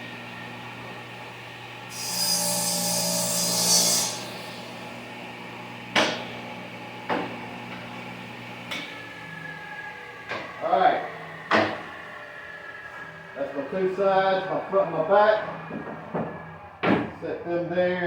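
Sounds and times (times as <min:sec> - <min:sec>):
table saw running: 0:00.0 - 0:17.1
saw cutting wood: 0:01.9 - 0:05.1.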